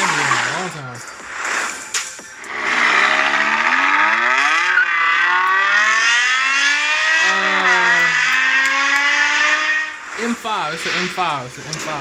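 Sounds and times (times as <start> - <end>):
car engine accelerating hard: 2.4 - 10.2.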